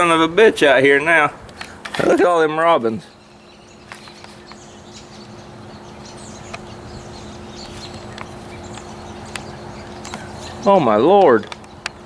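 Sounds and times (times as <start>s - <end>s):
birds chirping: 0.0s - 12.0s
steady low hum: 0.0s - 12.0s.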